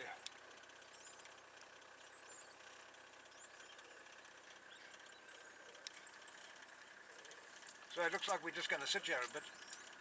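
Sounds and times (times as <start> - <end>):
small click: 5.8 - 6.1.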